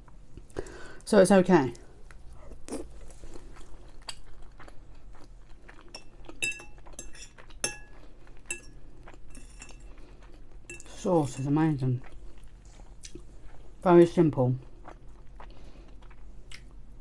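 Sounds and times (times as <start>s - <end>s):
soft chewing: 1.8s - 13.8s, 14.4s - 17.0s
cutlery clinking against plate: 6.0s - 7.9s, 8.5s - 9.8s.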